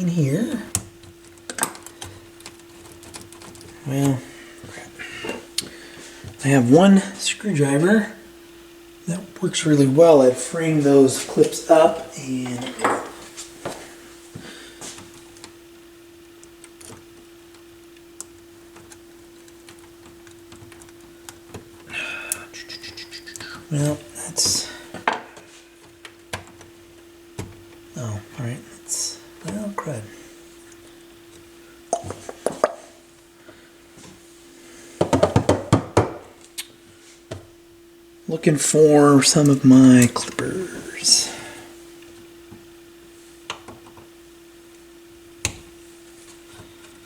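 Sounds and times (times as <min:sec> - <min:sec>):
faint steady hum: 0:00.0 - 0:47.0.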